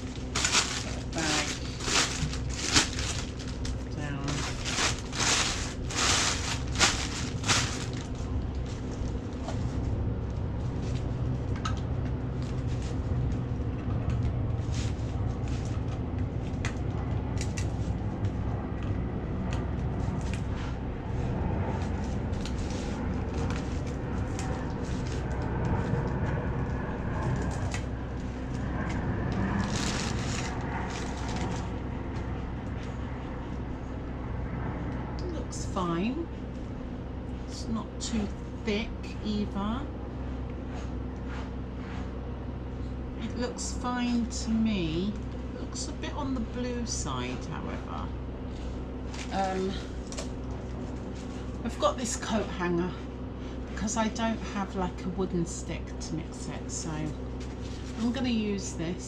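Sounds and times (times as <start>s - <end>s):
plastic bag crinkling: 0.0s - 9.4s, 29.6s - 31.8s.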